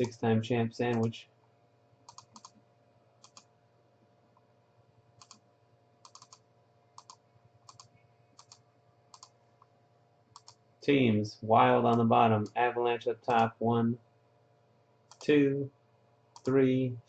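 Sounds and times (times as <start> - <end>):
computer mouse clicks: 2.0 - 2.6, 3.2 - 3.5, 5.2 - 5.4, 6.0 - 6.4, 7.0 - 9.7, 10.3 - 10.6, 15.1 - 15.3, 16.3 - 16.5.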